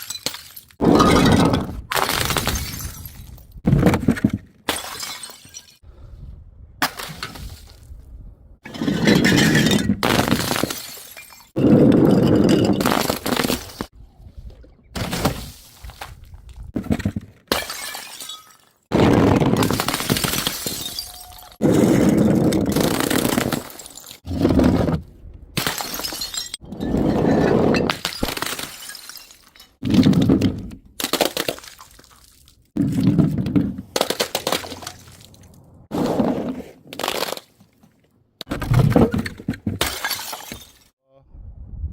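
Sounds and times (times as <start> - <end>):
glass bottles smashing: 0.0 - 3.5, 4.7 - 5.8, 8.7 - 13.6, 17.5 - 18.7, 19.6 - 21.9, 25.6 - 30.3, 39.8 - 40.9.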